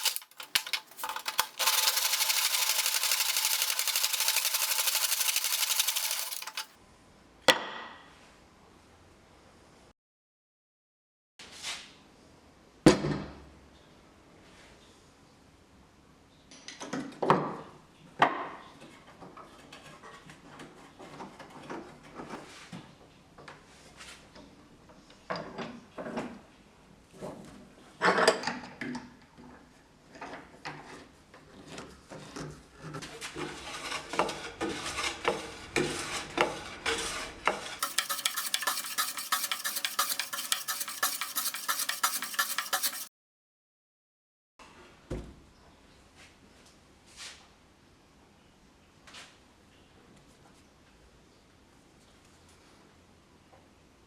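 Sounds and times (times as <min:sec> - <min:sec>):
metal tools clinking: 0:00.0 - 0:06.7.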